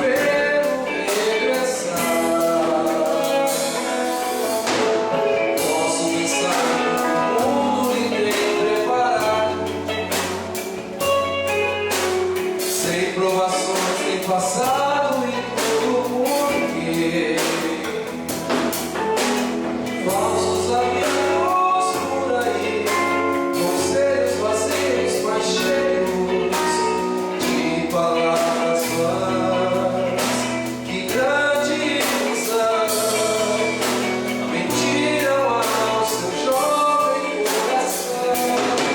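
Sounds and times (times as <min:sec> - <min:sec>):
voices singing together: 0:00.0 - 0:10.8
bass: 0:00.0 - 0:38.9
steady drum beat: 0:00.0 - 0:38.9.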